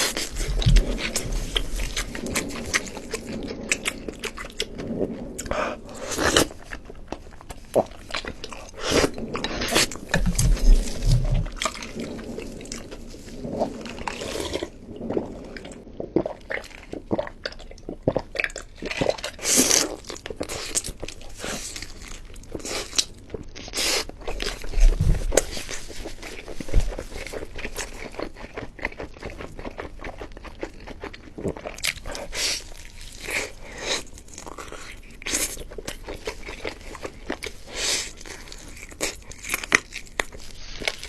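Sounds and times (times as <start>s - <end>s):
person chewing crunchy food: 0.0s - 41.0s.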